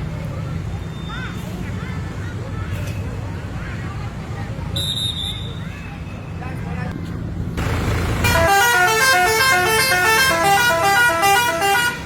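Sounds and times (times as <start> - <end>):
low engine rumble: 6.2 - 11.3
air horns playing a tune: 8.2 - 12.0.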